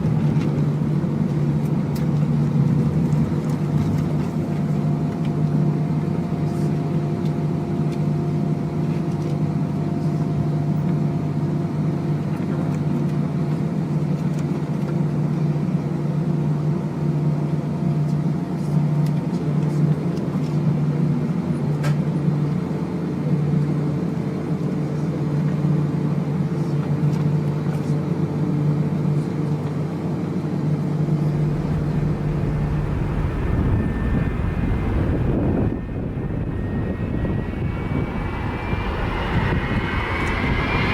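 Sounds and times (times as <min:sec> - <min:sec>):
jet engines droning: 0:31.2 - 0:40.9
deep low rumble: 0:31.3 - 0:40.9.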